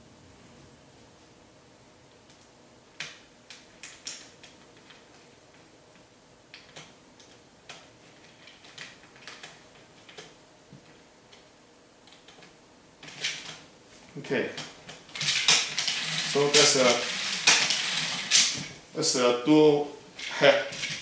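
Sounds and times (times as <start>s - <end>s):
small hard parts clicking: 14.6s - 18.7s.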